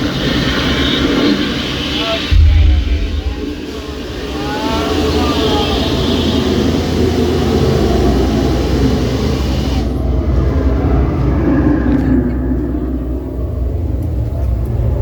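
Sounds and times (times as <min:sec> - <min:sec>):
loud rushing hiss: 0:02.0 - 0:10.0
steady low rumble: 0:02.2 - 0:08.2.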